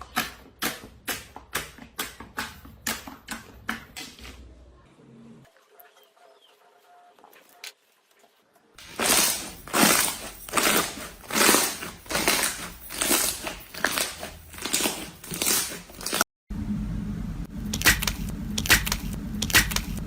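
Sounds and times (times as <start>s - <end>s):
slime squishing: 8.8s - 16.2s.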